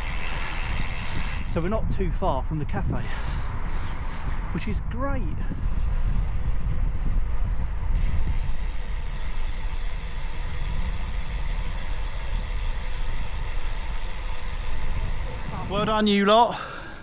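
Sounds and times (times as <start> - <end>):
tyres hissing on road: 0.0 - 1.6
wind buffeting microphone: 0.0 - 17.0.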